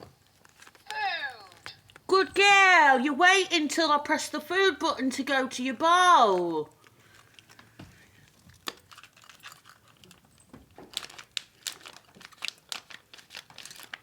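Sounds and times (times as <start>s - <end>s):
cat chewing food: 6.7s - 14.0s.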